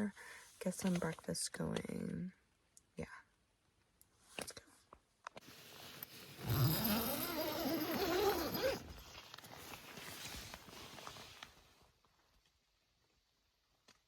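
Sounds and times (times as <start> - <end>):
tent zipper pulled open: 5.4 - 11.6
rustling and movement: 5.4 - 12.1.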